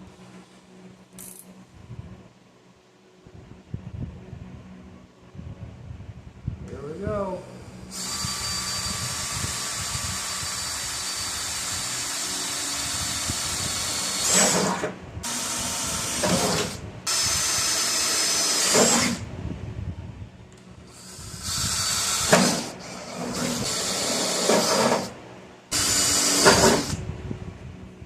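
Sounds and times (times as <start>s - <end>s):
power drill drilling holes: 7.9s - 19.2s, 20.9s - 25.1s, 25.7s - 27.0s.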